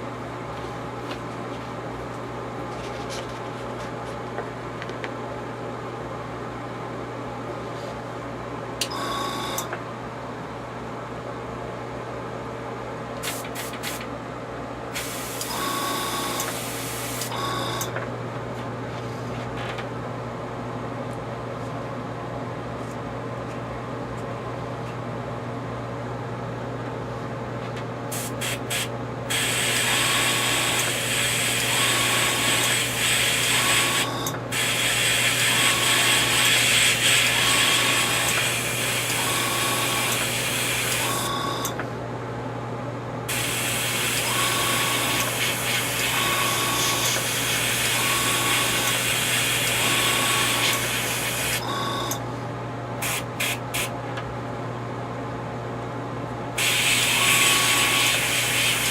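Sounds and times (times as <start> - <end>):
airbrush spraying hiss: 56.6 - 58.9.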